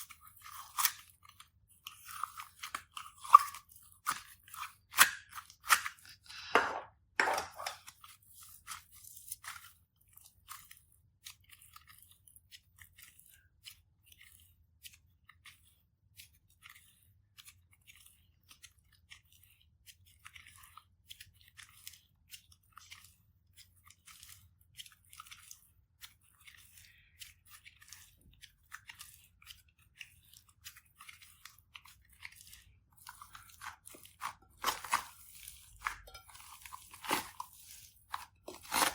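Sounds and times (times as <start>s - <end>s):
slime crackling and popping: 33.0s - 38.9s.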